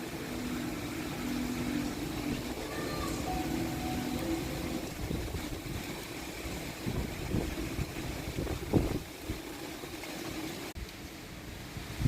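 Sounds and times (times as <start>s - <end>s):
faint held tones: 0.0s - 5.0s
strong wind gusting on microphone: 4.8s - 9.5s.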